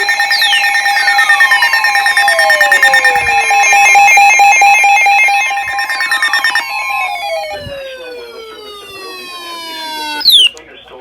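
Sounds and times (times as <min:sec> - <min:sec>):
falling whistle-like sweeps: 0:00.0 - 0:10.5
two-tone alert signal: 0:00.0 - 0:10.5
rapid chirping bursts: 0:00.0 - 0:10.6.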